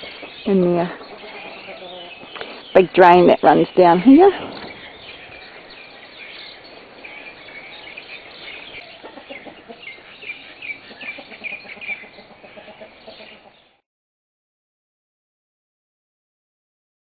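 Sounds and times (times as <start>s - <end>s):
chickens clucking: 0.0s - 2.7s, 6.6s - 13.8s.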